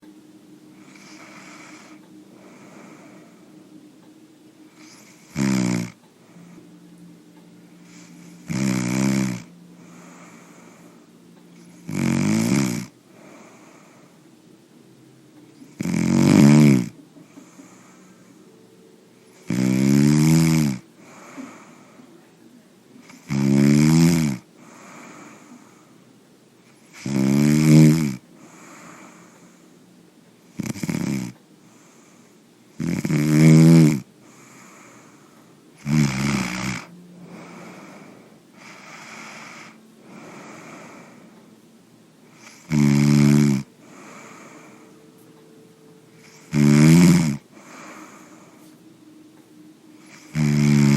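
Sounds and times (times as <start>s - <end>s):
faint breaths: 0.0s - 33.3s, 34.0s - 50.9s
loud snores: 0.8s - 3.3s, 4.7s - 6.0s, 7.8s - 10.9s, 11.6s - 14.1s, 15.6s - 18.3s, 19.4s - 22.0s, 23.0s - 25.8s, 26.8s - 29.6s, 30.5s - 35.2s, 35.8s - 41.4s, 42.3s - 45.0s, 46.2s - 48.7s, 50.0s - 50.9s.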